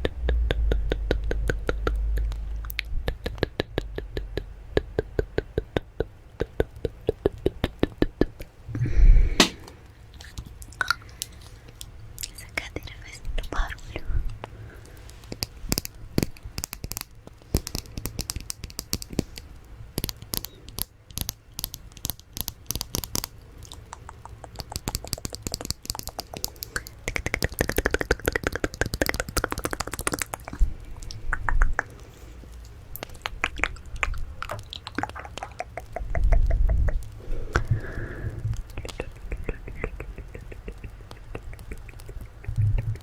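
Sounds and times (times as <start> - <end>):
soft pitch-bending mouth sound: 0.0 - 9.8, 22.7 - 43.0
wet mouth clicks and lip smacks: 0.5 - 8.5, 10.2 - 13.7, 14.3 - 43.0.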